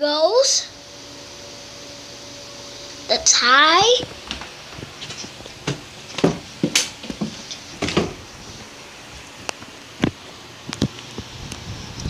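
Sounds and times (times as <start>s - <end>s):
ceiling fan whirring: 0.0s - 12.0s.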